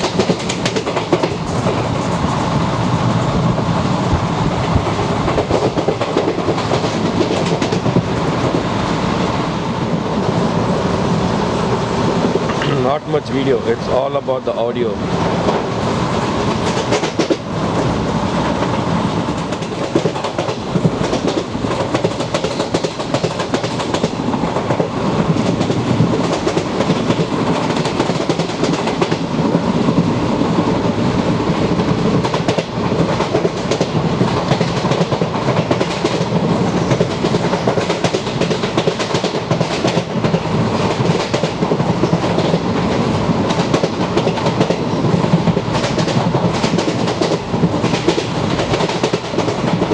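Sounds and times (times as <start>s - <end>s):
train wheels clattering over rail joints: 0.0s - 2.6s, 4.1s - 8.7s, 15.1s - 49.9s.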